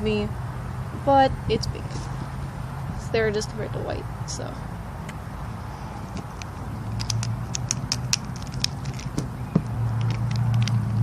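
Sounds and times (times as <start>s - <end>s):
plastic puzzle cube clicking: 6.3s - 9.3s, 10.0s - 11.0s.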